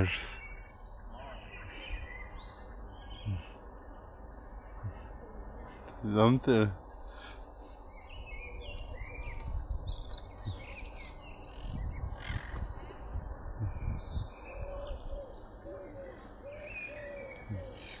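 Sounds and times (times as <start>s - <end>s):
low coo-like bird calls: 0.0s - 6.0s, 7.1s - 18.0s
birds chirping: 0.0s - 18.0s
microphone rumbles: 11.6s - 15.0s.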